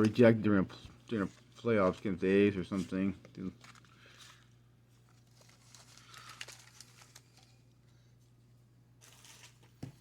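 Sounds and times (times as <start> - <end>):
low electrical hum: 0.0 - 10.0
cardboard cards rustling: 1.1 - 7.8, 9.0 - 10.0.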